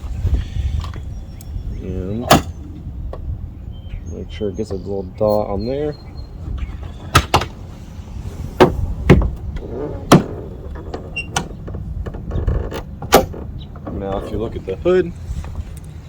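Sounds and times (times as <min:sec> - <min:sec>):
steady low rumble: 0:00.0 - 0:16.0
car hood clunks and latch clicks: 0:06.5 - 0:07.6, 0:08.6 - 0:14.3.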